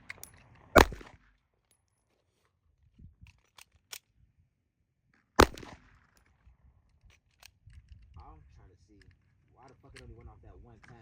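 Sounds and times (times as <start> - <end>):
gunshots with echo: 0.7 - 1.2, 5.4 - 5.8.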